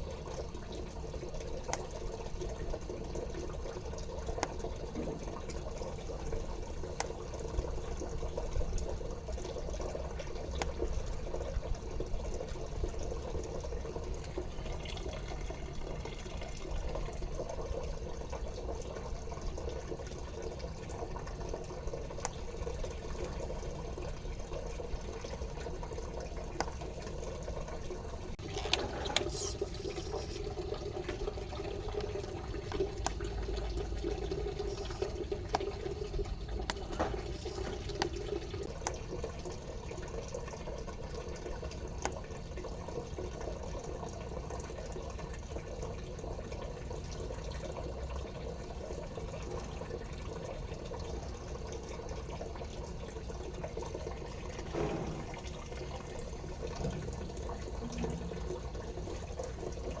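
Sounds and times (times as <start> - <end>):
water running from tap: 0.0 - 60.0.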